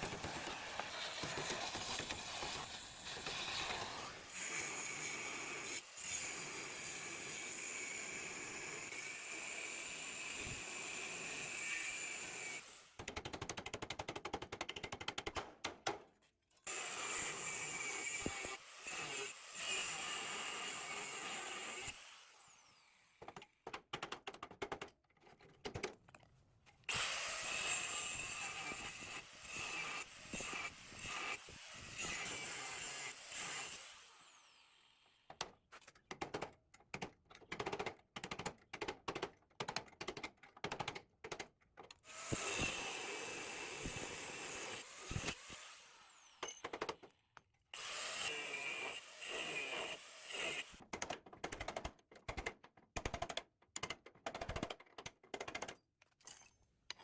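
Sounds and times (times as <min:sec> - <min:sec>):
power tool motor whining: 0:42.1 - 0:46.6
clicks and knocks of parts handled: 0:50.8 - 0:57.0.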